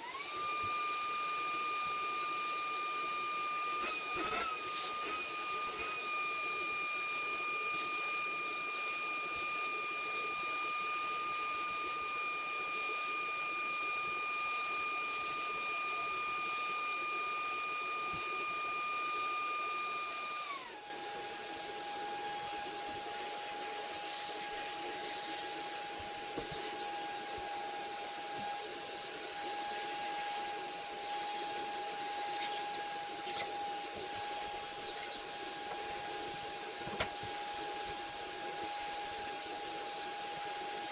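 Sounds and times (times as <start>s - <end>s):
electric motor whining: 15.0s - 40.9s.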